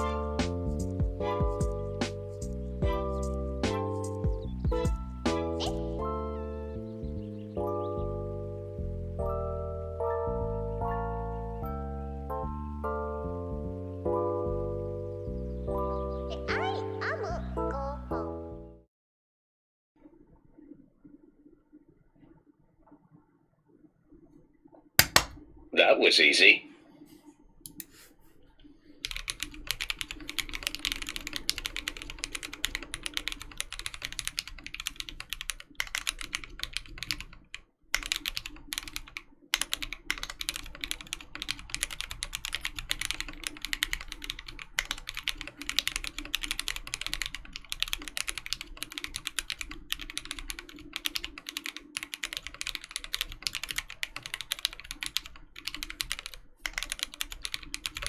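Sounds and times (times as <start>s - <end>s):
fast typing on mechanical keyboard: 25.0s - 25.4s, 29.0s - 58.0s.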